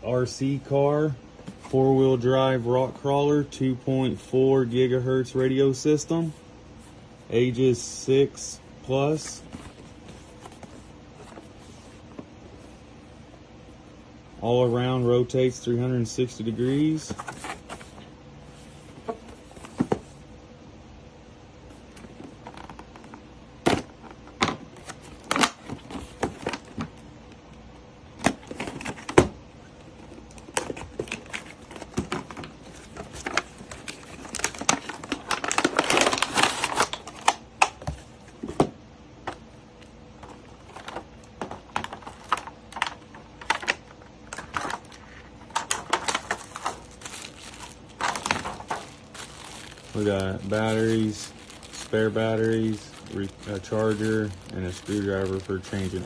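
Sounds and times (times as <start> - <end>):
rustling: 44.5 - 56.0.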